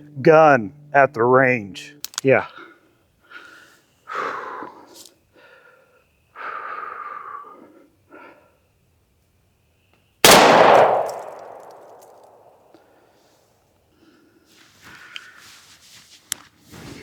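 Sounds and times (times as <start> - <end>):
soft breathy sounds: 2.5 - 8.7
revolver gunshot: 10.3 - 12.4.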